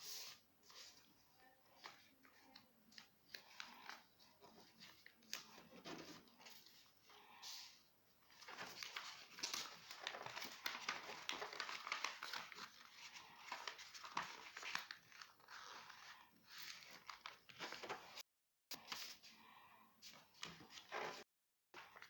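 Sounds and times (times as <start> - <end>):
material crinkling and rustling: 8.3 - 16.0.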